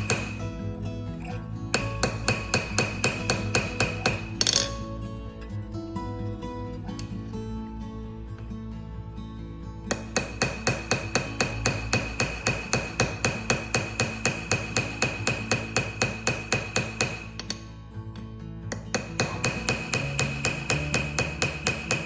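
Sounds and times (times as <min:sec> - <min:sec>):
small hammer tapping metal: 0:00.0 - 0:00.4, 0:01.7 - 0:04.8, 0:09.9 - 0:17.7, 0:18.7 - 0:22.0
guitar music: 0:00.0 - 0:13.5, 0:17.2 - 0:21.4.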